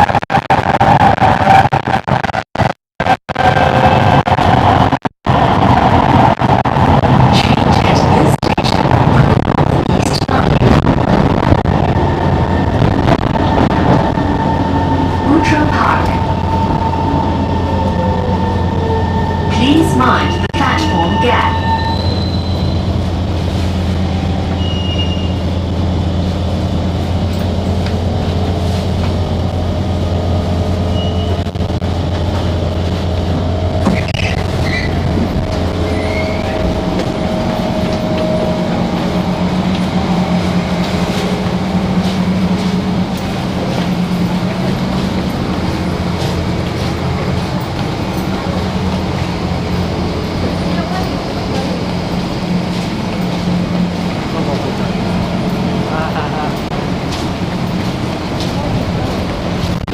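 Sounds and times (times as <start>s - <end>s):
train motor hum and rumble: 0.0s - 59.9s
wheel squeals: 21.5s - 22.9s, 24.5s - 25.5s, 30.9s - 31.4s, 33.8s - 35.0s, 35.8s - 36.7s.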